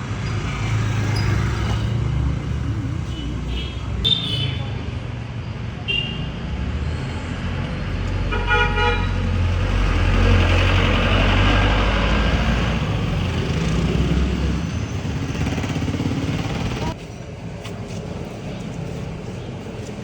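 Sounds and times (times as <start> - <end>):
vehicle horn toot: 8.3 - 9.2
vehicle engine passing: 9.2 - 17.0.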